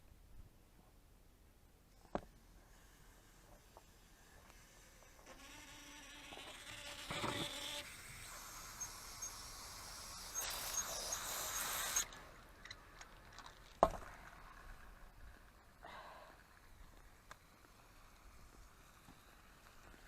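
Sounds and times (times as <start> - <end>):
faint whine in pipe: 0.0 - 20.0
water hissing through a hose: 2.6 - 12.4.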